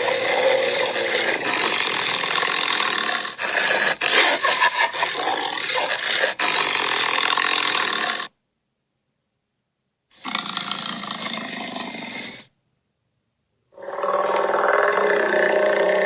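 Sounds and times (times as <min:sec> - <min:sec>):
monster roaring: 0:00.0 - 0:08.3, 0:13.8 - 0:16.0.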